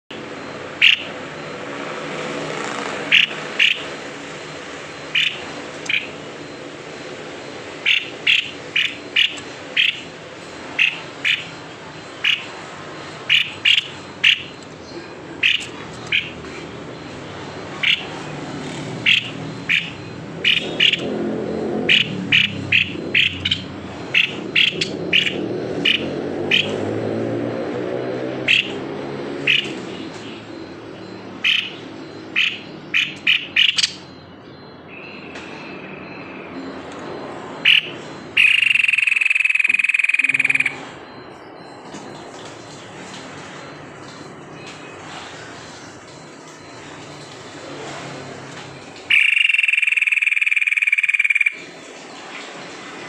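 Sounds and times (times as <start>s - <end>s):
bird calling sharp notes: 0.8s - 1.2s, 2.9s - 4.0s, 5.1s - 6.2s, 7.8s - 12.6s, 13.2s - 14.6s, 15.4s - 16.4s, 17.8s - 26.9s, 28.4s - 28.8s, 29.4s - 34.1s, 37.6s - 41.0s, 49.1s - 51.6s.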